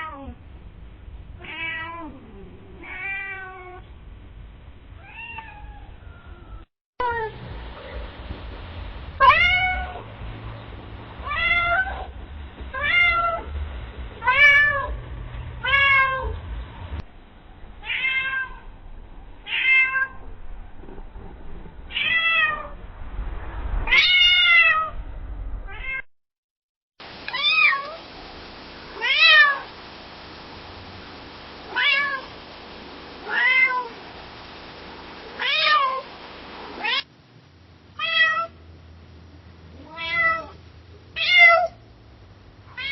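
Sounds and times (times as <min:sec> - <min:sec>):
cat meowing: 0:01.4 - 0:03.8, 0:05.0 - 0:07.3, 0:09.2 - 0:10.0, 0:11.2 - 0:12.1, 0:17.8 - 0:18.7, 0:19.4 - 0:20.2, 0:25.7 - 0:26.1, 0:31.7 - 0:32.3, 0:33.2 - 0:34.0, 0:39.8 - 0:40.6.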